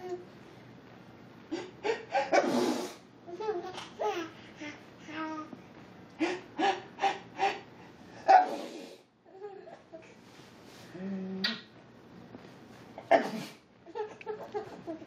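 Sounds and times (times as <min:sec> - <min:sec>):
fake sneeze: 0:02.3 - 0:03.0, 0:08.3 - 0:09.0, 0:13.0 - 0:13.7.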